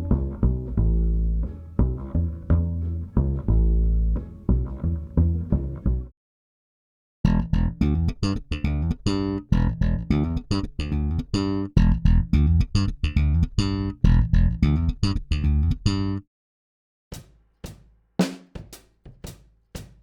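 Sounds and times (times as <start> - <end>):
electric bass guitar riff: 0.0 - 6.1, 7.3 - 16.2.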